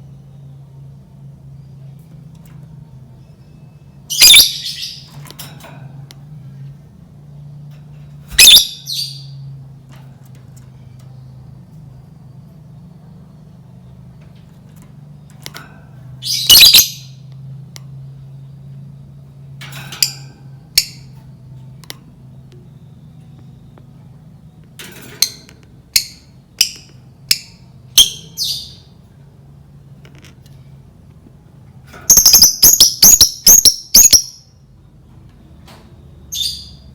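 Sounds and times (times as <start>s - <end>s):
steady low hum: 0.0s - 36.9s
bird shrill squawking: 4.1s - 5.1s, 8.3s - 9.4s, 16.2s - 17.1s, 32.1s - 34.4s.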